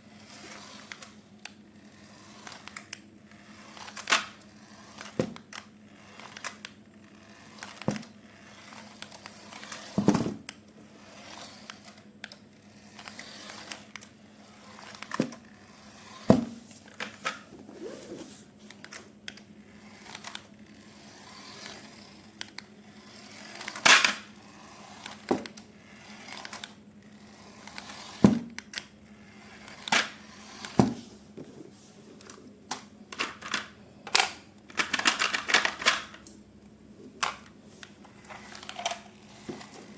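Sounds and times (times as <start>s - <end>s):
plastic toy parts clicking: 33.1s - 36.3s.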